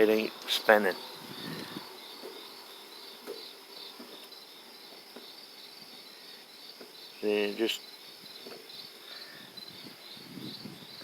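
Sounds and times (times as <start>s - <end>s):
insects trilling: 0.0s - 11.0s.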